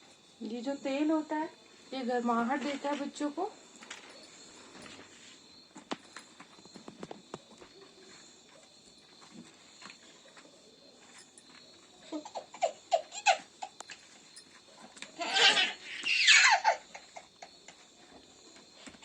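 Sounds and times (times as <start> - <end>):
baby laughing and squealing: 12.1 - 13.7, 15.2 - 17.3.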